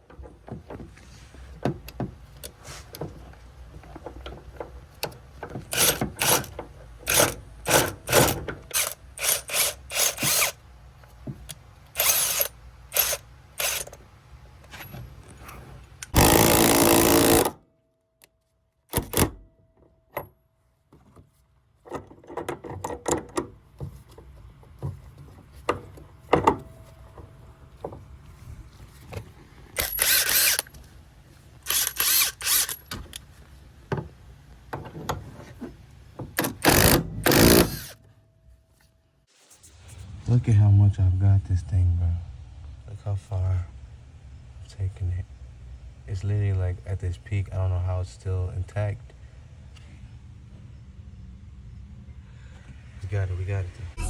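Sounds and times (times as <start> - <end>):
ratchet clicking: 5.7 - 10.6, 12.0 - 14.0, 29.8 - 30.7, 31.7 - 32.9.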